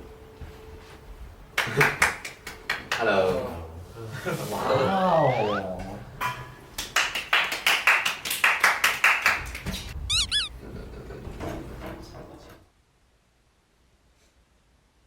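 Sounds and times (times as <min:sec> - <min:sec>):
short high squeaks: 0:05.2 - 0:05.8, 0:10.0 - 0:10.6.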